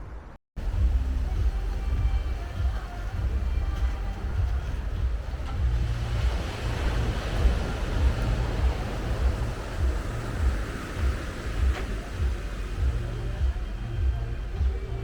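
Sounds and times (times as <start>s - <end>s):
wind buffeting microphone: 0.0s - 15.0s
surf washing onto beach: 3.8s - 15.0s.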